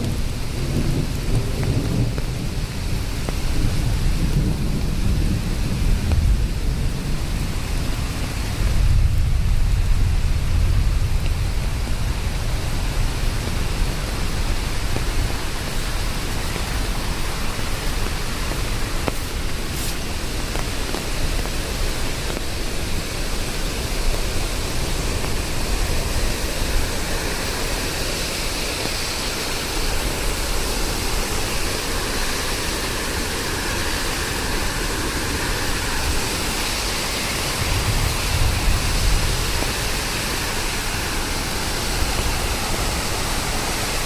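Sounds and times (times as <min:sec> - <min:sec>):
low rolling thunder: 0:00.0 - 0:14.8, 0:33.4 - 0:40.8
steady rain: 0:00.0 - 0:44.0.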